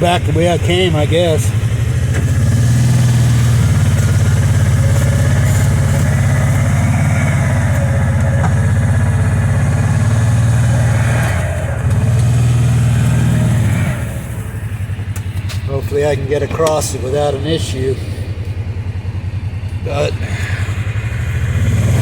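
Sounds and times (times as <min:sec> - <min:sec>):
engine running steadily: 0:00.0 - 0:22.0.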